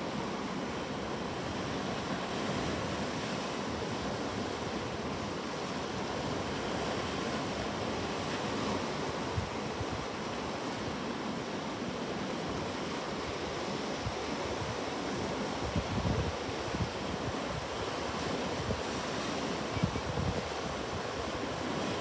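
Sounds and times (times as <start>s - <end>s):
sea waves breaking on shore: 0.0s - 22.0s
wind gusts on microphone: 14.0s - 22.0s.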